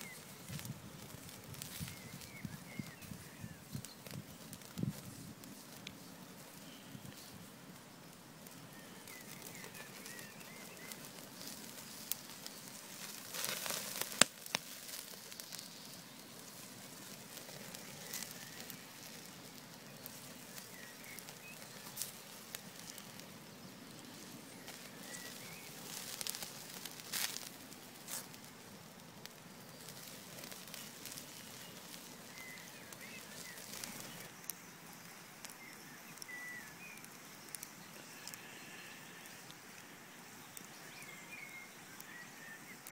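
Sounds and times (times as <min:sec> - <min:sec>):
campfire crackling: 0:00.0 - 0:42.9
fire popping: 0:00.0 - 0:42.9.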